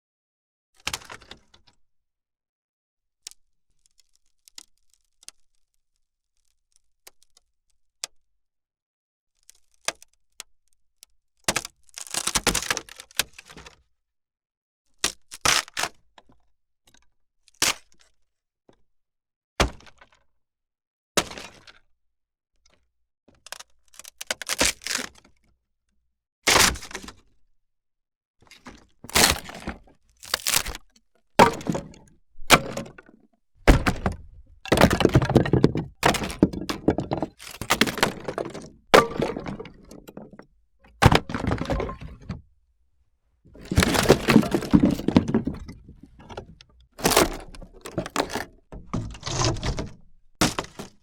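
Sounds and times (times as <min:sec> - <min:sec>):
wood cracking and snapping: 0:29.1 - 0:40.4, 0:43.6 - 0:51.0.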